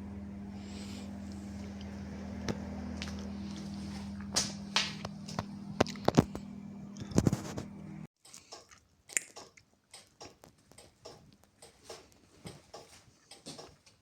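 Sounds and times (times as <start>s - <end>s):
low electric hum: 0.0s - 8.1s.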